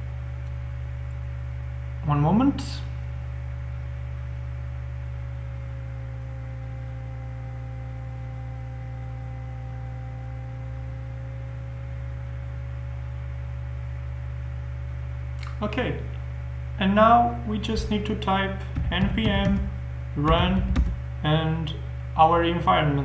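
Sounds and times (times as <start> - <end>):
low electrical hum: 0.0 - 23.0.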